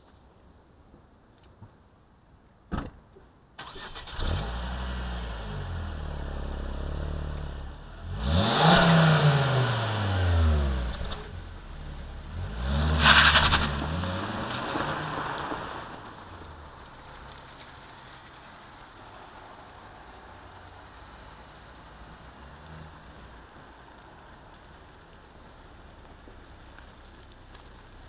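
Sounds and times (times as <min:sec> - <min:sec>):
car engine starting and revving: 0:03.6 - 0:16.6.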